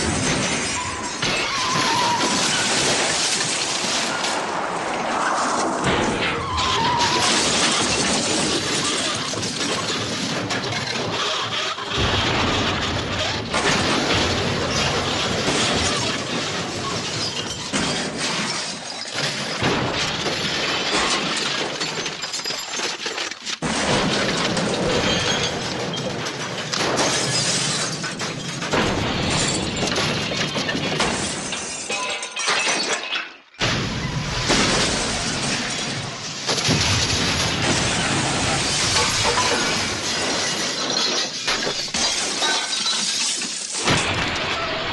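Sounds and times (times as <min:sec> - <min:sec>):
glass shattering: 0:00.0 - 0:04.4, 0:06.0 - 0:44.8
cartoon crash and smash effects: 0:00.0 - 0:04.5, 0:05.6 - 0:21.2, 0:33.6 - 0:44.9.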